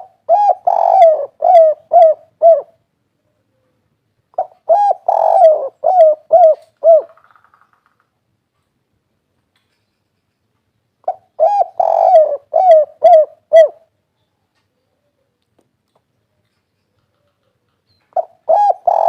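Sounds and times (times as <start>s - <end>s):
dove cooing: 0.0s - 2.8s, 4.4s - 7.2s, 11.0s - 13.9s, 18.1s - 19.0s.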